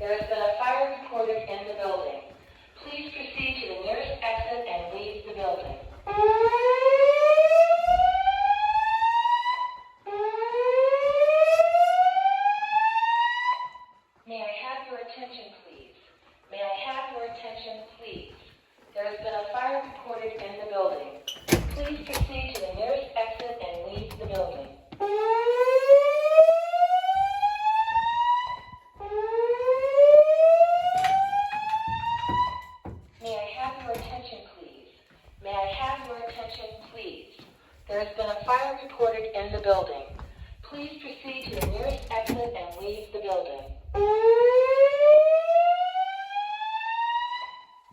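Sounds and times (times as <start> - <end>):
slow-whoop fire alarm tone: 5.9 - 14.1, 24.9 - 33.0, 43.9 - 47.9.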